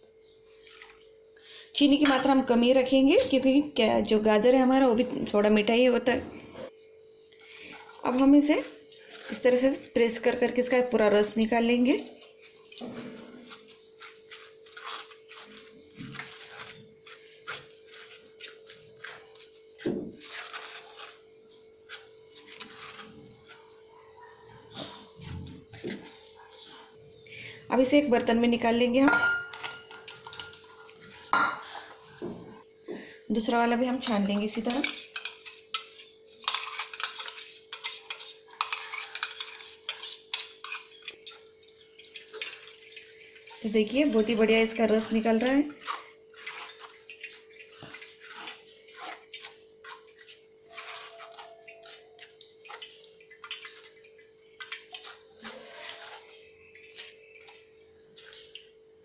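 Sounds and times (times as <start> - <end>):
paste scraped against strainer: 13.1 - 23.8, 34.7 - 41.1, 45.2 - 52.4, 54.9 - 57.2.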